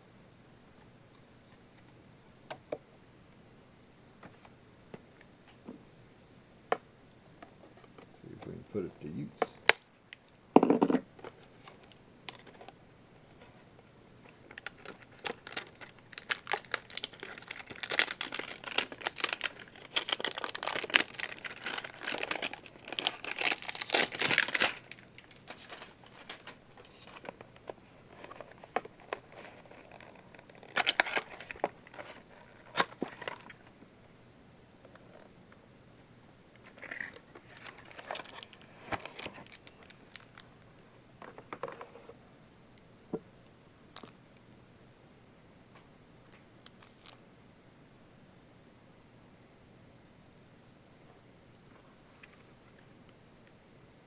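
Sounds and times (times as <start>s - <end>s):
plastic packaging crinkling and tearing: 14.4s - 27.4s, 28.2s - 33.6s, 36.7s - 40.5s, 46.7s - 47.2s.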